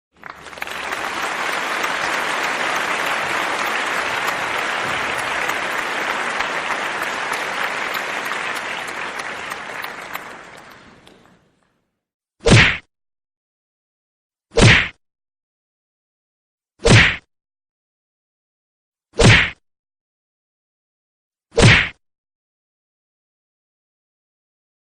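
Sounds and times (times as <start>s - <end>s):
crowd applause: 0.1s - 11.7s.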